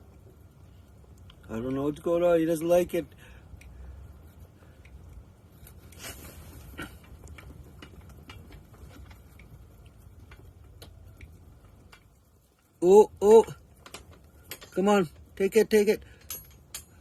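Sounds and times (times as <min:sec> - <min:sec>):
light clicks and taps: 0:00.0 - 0:06.1, 0:06.8 - 0:17.0.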